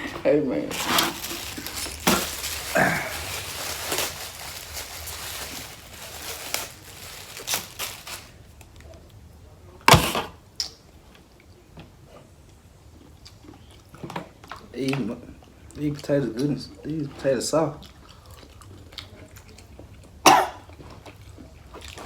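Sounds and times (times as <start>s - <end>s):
packaging rustling and clicking: 0.7s - 8.8s.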